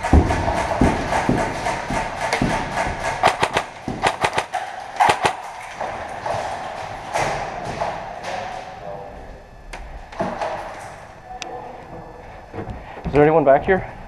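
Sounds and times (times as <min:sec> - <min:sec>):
heavy low thuds: 0:00.0 - 0:04.2
airsoft guns firing: 0:00.0 - 0:06.8.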